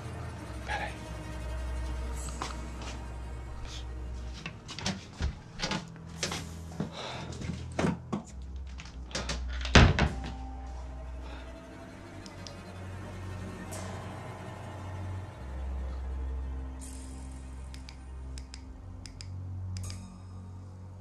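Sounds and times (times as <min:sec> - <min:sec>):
low background music drone: 0:00.0 - 0:21.0
doors and cupboards knocking: 0:09.7 - 0:10.4.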